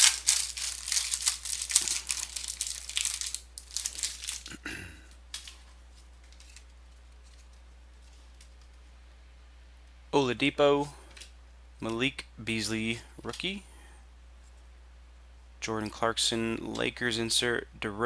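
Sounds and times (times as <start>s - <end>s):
foil wrapper tearing and crinkling: 0.0s - 4.6s.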